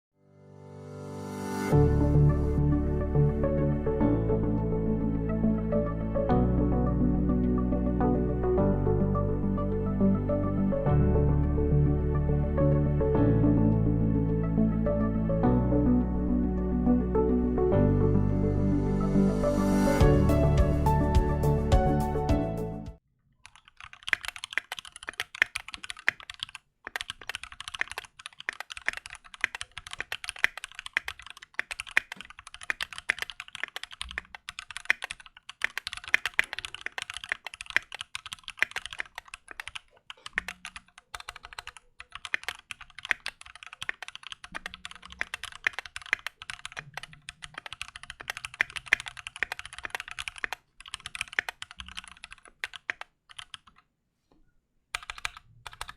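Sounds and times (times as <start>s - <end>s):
mechanical keyboard typing: 23.4s - 53.8s, 55.0s - 55.9s.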